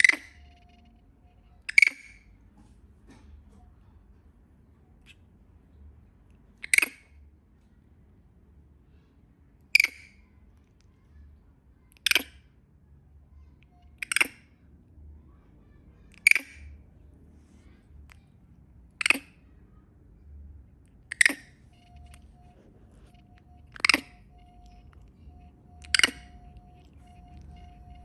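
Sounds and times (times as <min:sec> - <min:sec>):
monkey shrieking: 0:00.0 - 0:00.6, 0:06.6 - 0:07.1, 0:14.0 - 0:14.5, 0:16.1 - 0:16.7, 0:19.0 - 0:19.4, 0:21.1 - 0:22.4, 0:23.7 - 0:28.0.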